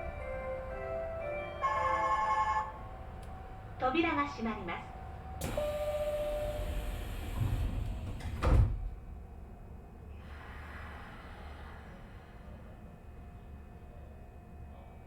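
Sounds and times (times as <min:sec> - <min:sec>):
train doors sliding shut: 0:04.9 - 0:09.0.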